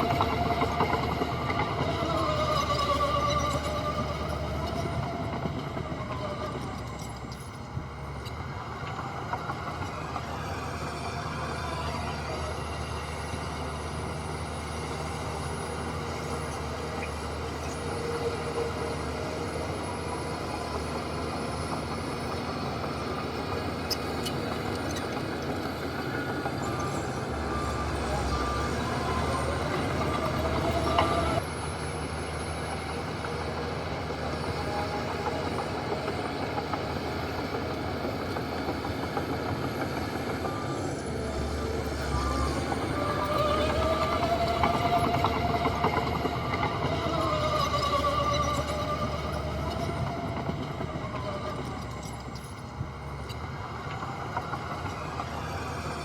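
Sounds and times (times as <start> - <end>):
diesel earthmoving machinery running: 0.0 - 56.0.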